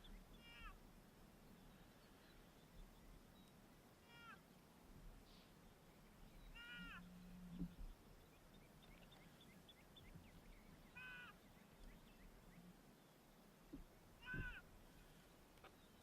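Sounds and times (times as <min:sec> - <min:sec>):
electronic animal distress cry: 0:06.6 - 0:07.1.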